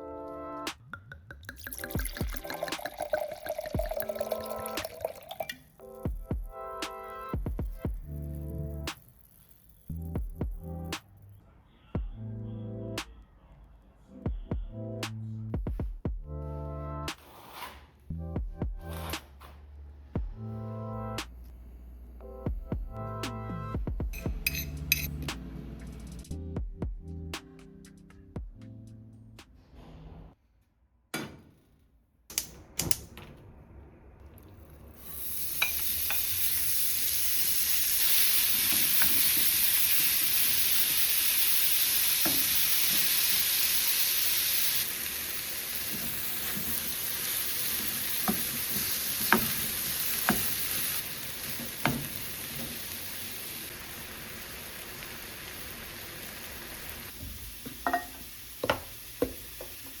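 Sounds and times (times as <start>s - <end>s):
food sizzling in a pan: 8.1s - 10.1s, 24.4s - 25.3s, 35.0s - 60.0s.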